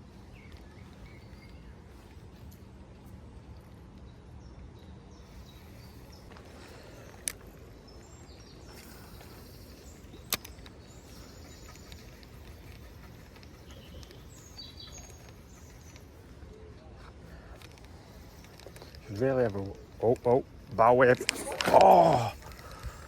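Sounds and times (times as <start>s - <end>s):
faint bird chirps: 0.0s - 2.7s, 4.0s - 23.0s
sharp clicks: 10.1s - 10.8s.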